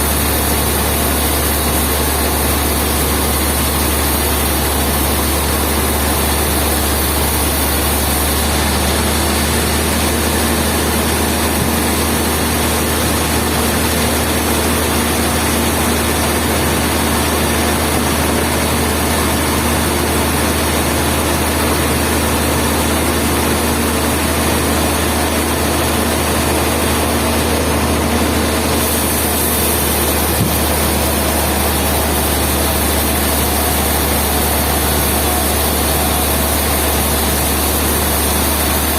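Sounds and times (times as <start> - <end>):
sawmill machinery droning: 0.0 - 38.9
deep hum: 27.4 - 38.9.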